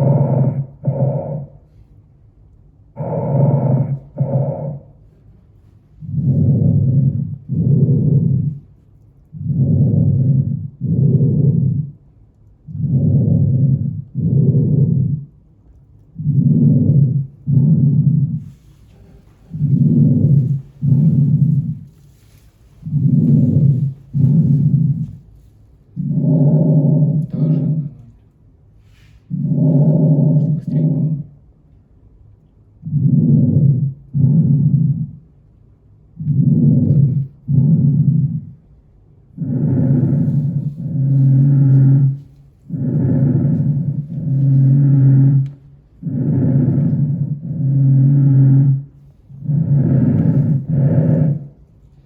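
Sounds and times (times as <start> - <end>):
muffled breathing through stethoscope: 39.4 - 52.0.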